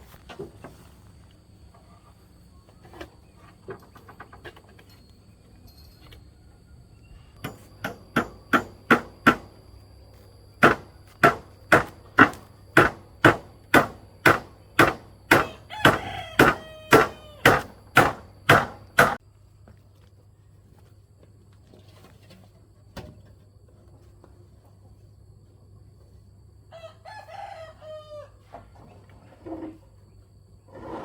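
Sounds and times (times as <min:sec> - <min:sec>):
tool striking wood: 0:07.4 - 0:09.6, 0:10.6 - 0:19.2
rooster crowing: 0:15.3 - 0:17.8, 0:26.7 - 0:28.5.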